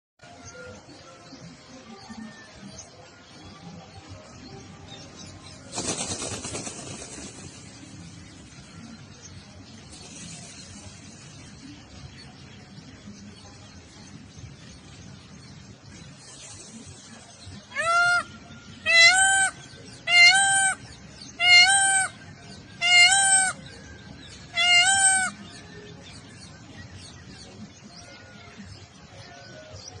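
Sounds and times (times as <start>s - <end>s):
peacock calling: 16.3s - 25.8s.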